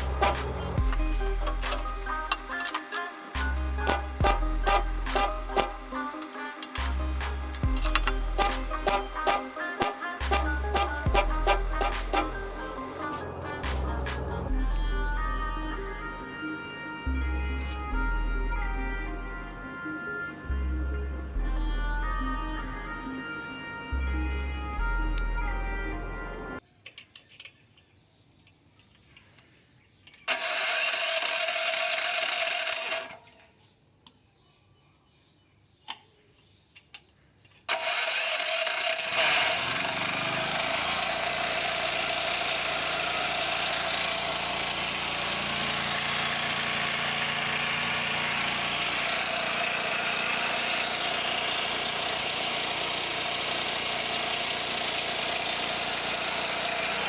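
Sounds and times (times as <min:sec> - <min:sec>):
clicks: 0:00.0 - 0:14.3
generator engine running: 0:00.0 - 0:26.6, 0:39.3 - 0:57.0.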